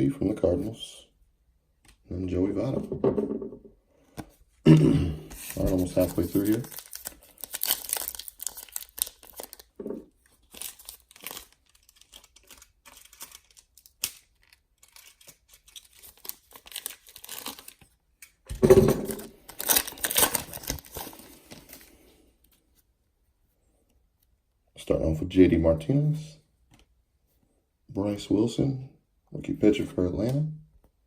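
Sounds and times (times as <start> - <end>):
wrapper crinkling and tearing: 5.3 - 18.0, 19.1 - 21.9.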